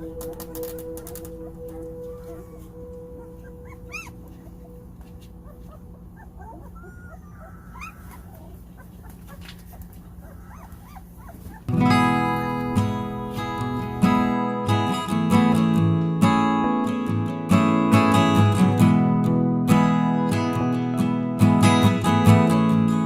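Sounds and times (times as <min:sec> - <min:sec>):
puppies whimpering and squeaking: 0:00.0 - 0:13.8
acoustic guitar music: 0:00.0 - 0:23.0.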